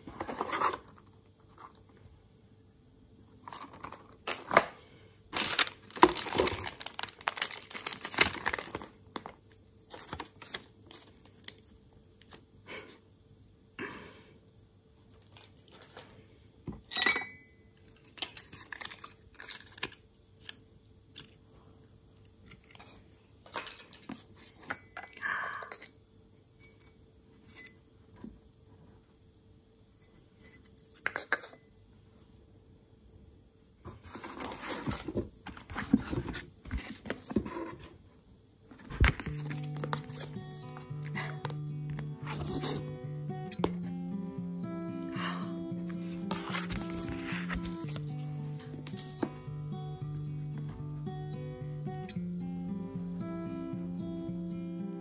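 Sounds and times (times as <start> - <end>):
crinkling and rustling: 0.0 - 2.0, 3.4 - 12.4, 15.2 - 16.3, 22.4 - 24.8, 33.8 - 38.0, 38.7 - 41.6, 46.3 - 48.0.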